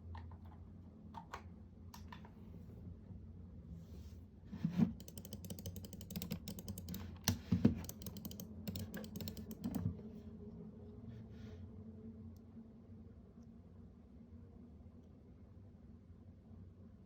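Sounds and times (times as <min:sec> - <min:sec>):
mouse buttons clicking: 0:05.0 - 0:09.9.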